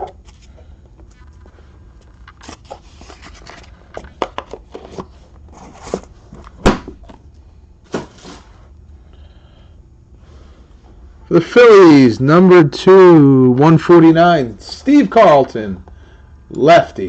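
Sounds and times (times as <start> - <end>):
cards and packaging rustling: 0.0 - 6.6.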